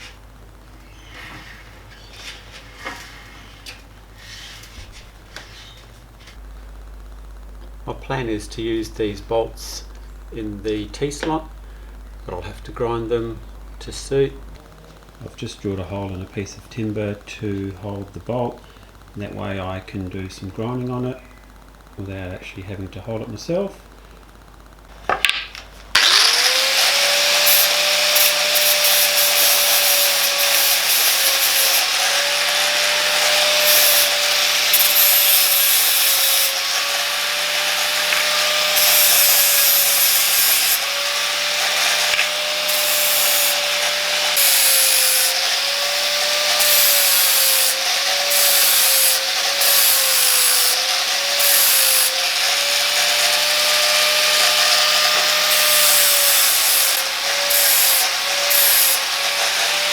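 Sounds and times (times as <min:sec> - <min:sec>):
electric grinder grinding metal: 0:25.9 - 0:59.9.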